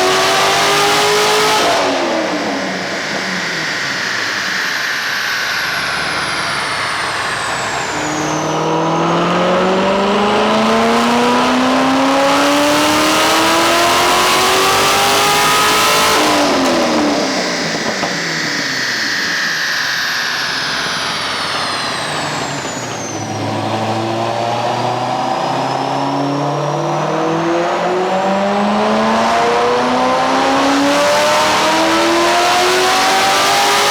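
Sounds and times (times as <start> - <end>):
car engine accelerating hard: 0.0 - 33.9.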